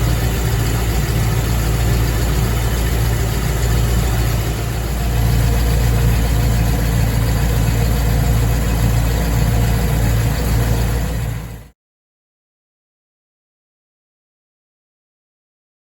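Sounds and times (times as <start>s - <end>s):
car engine idling: 0.0s - 11.7s.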